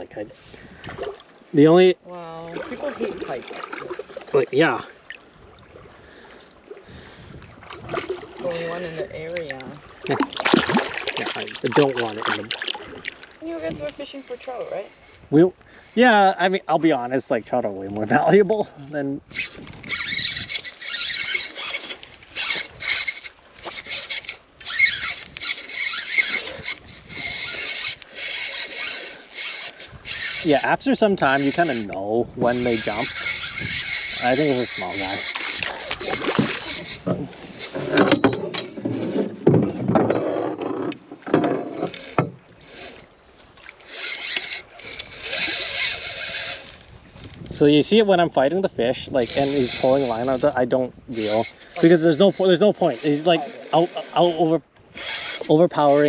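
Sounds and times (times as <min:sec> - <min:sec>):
water splashing: 0:00.0 - 0:15.0, 0:19.2 - 0:47.2
fishing reel drag buzzing: 0:19.2 - 0:38.2, 0:41.6 - 0:56.0.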